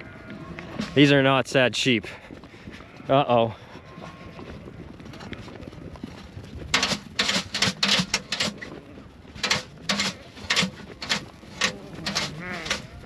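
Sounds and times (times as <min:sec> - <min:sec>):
sheep bleating harshly: 0:11.6 - 0:13.0.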